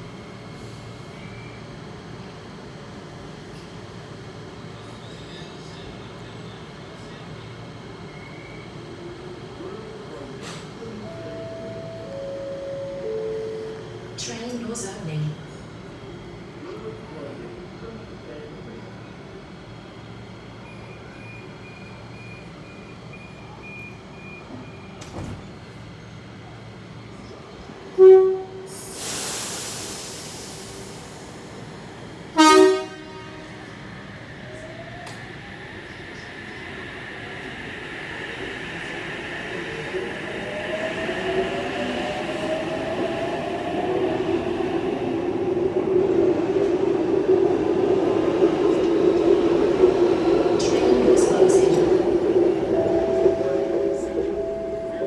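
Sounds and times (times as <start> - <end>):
train door warning beeps: 10.4 - 14.6, 20.6 - 25.6, 50.5 - 55.0
electric train motors whining: 29.6 - 55.0.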